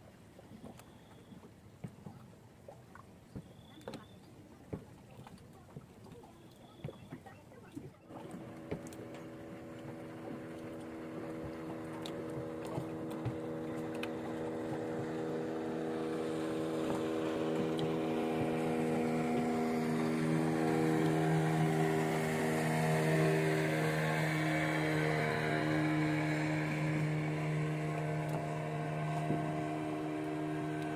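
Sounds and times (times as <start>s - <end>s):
motorboat engine: 0.0s - 30.9s
faint clicks: 11.5s - 14.2s.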